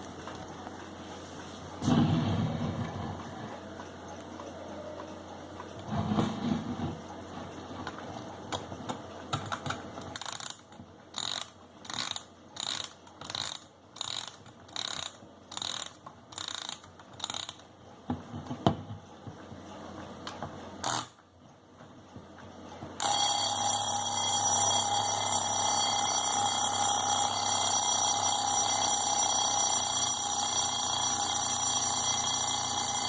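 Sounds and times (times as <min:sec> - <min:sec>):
alarm clock key ratcheting: 0:10.1 - 0:17.7.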